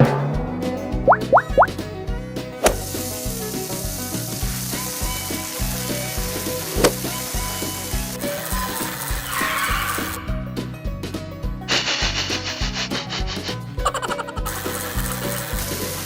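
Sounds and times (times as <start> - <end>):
background music with beat: 0.0 - 16.0
sizzling hiss: 2.6 - 9.4, 11.7 - 13.6, 14.4 - 16.0.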